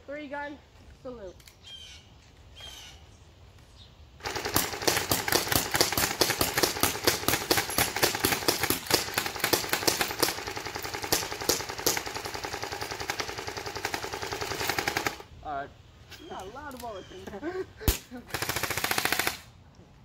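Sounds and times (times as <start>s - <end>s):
airsoft guns firing rapidly: 4.2s - 15.3s, 17.9s - 19.5s.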